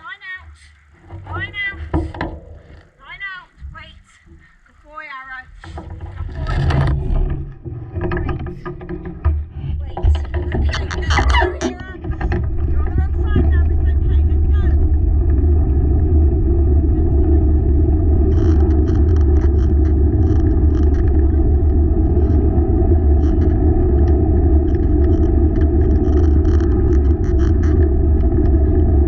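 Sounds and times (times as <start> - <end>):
wheeled rig rumbling on trail: 0.0 - 29.0
crisp ticks: 18.3 - 22.4, 23.1 - 28.6.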